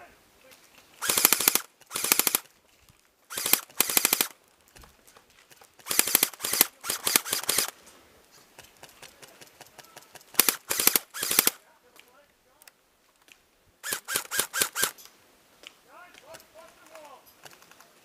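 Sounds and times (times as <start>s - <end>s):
airsoft rifle full-auto bursts: 1.0s - 2.5s, 3.3s - 4.4s, 5.8s - 7.8s, 9.7s - 11.6s, 13.8s - 15.0s.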